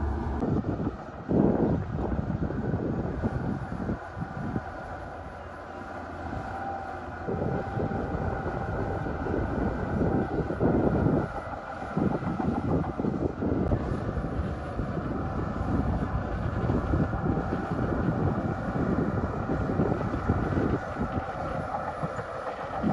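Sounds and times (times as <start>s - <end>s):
heavy machinery diesel engine: 0.0s - 22.9s.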